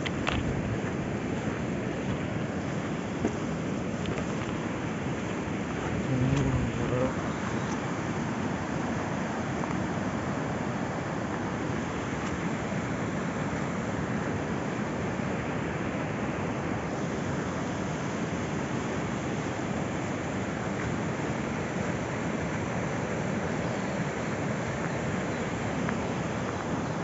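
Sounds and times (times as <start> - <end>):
flooded river rushing: 5.0 - 10.0.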